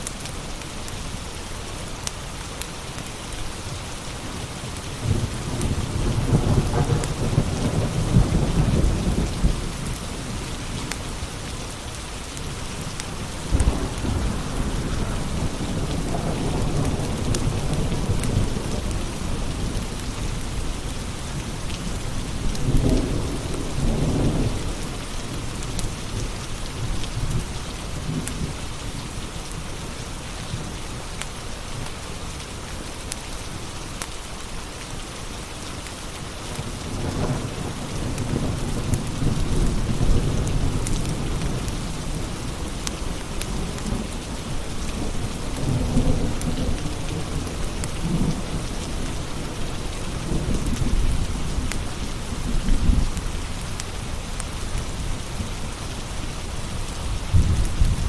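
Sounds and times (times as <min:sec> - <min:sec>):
steady rain: 0:00.0 - 0:58.0
rolling thunder: 0:05.0 - 0:10.8, 0:57.1 - 0:58.0
wood fire crackling: 0:08.5 - 0:23.6.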